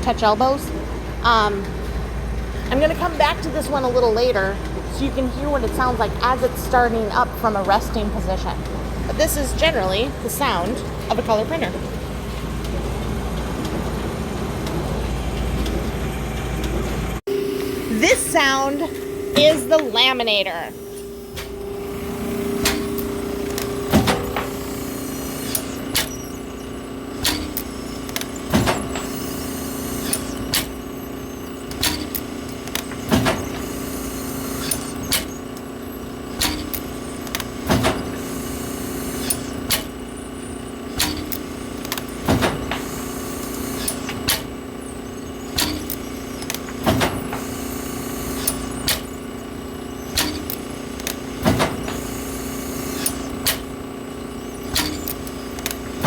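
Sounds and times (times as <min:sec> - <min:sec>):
laminator humming: 0:00.0 - 0:56.0
laminator sharp click: 0:22.4 - 0:30.8, 0:36.3 - 0:38.2, 0:45.5 - 0:49.1, 0:50.0 - 0:53.7, 0:54.6 - 0:56.0.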